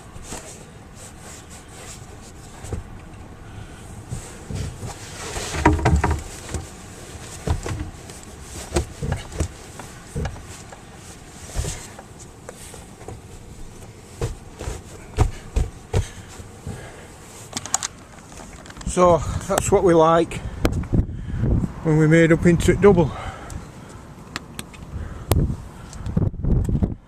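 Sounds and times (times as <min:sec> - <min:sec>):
seat panels knocking and thudding: 0:01.4 - 0:03.0, 0:04.0 - 0:17.0.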